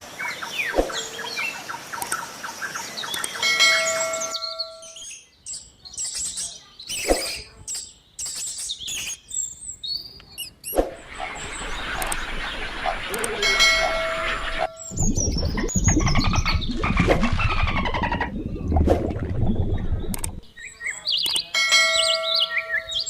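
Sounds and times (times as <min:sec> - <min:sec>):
birds chirping: 0:00.0 - 0:23.0
steady ringing tone: 0:13.4 - 0:15.0.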